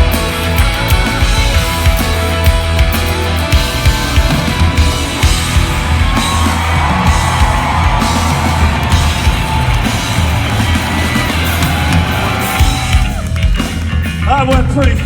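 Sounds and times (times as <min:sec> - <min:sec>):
electric guitar sustained notes: 0:00.0 - 0:13.6
bass guitar: 0:00.0 - 0:15.0
drums: 0:00.0 - 0:15.0.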